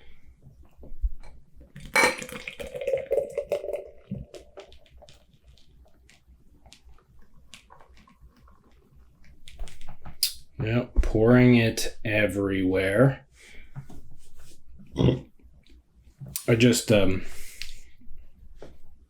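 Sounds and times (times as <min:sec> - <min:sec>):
beer pouring into a glass: 0:01.8 - 0:06.1.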